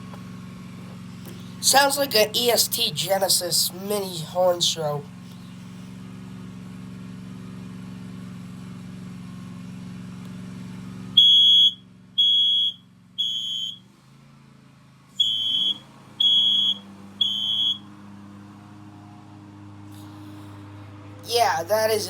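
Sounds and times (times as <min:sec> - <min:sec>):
smoke alarm beeping: 0:11.2 - 0:13.8, 0:15.2 - 0:17.8.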